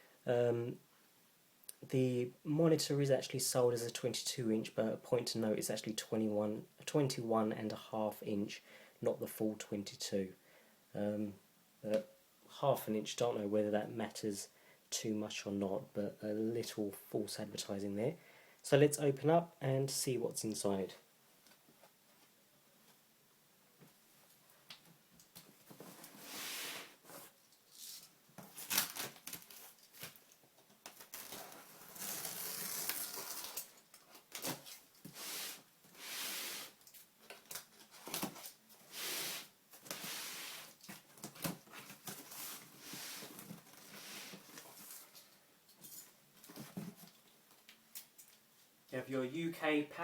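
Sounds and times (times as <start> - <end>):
cardboard packaging rustling: 25.5 - 35.6, 37.2 - 39.0, 39.7 - 45.3.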